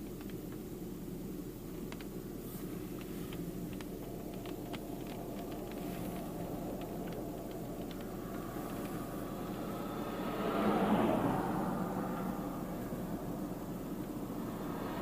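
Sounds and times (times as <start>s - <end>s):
car low rumble: 0.0s - 15.0s
rain or hail ticking: 2.9s - 9.7s.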